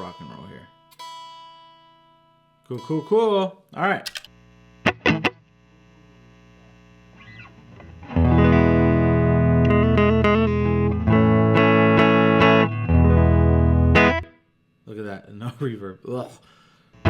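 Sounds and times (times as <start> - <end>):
electric guitar notes and chords: 4.8 - 5.5, 7.2 - 14.4.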